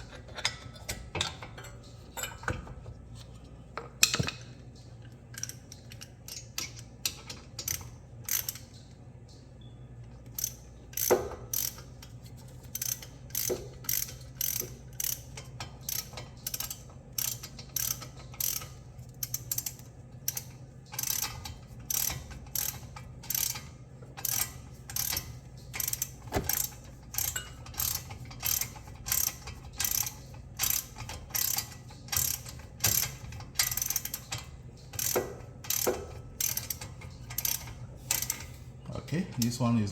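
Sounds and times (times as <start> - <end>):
ratchet wrench clicking: 5.3 - 8.8, 10.3 - 12.1, 12.7 - 38.5.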